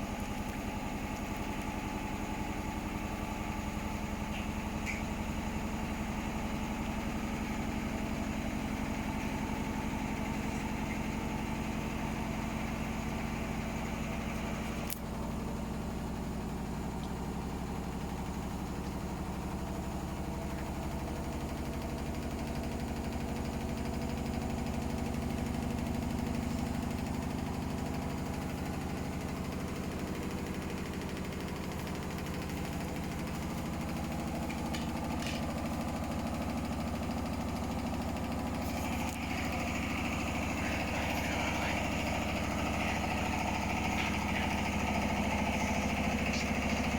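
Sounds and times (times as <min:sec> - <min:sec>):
washing machine spinning unbalanced: 0:15.6 - 0:46.9.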